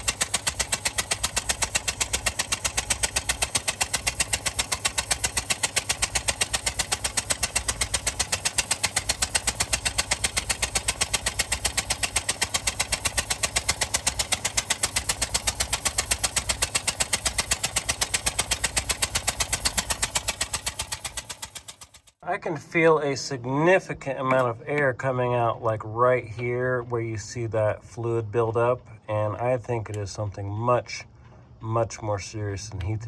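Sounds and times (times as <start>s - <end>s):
truck engine idling: 0.0s - 22.2s.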